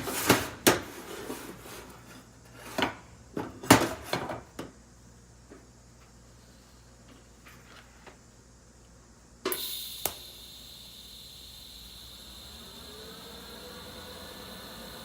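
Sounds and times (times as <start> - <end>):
welding arc crackling and hissing: 9.5 - 15.0.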